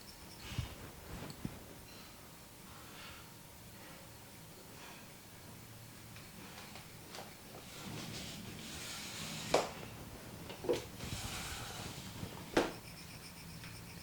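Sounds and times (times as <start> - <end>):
hands rubbing head: 7.2 - 12.8.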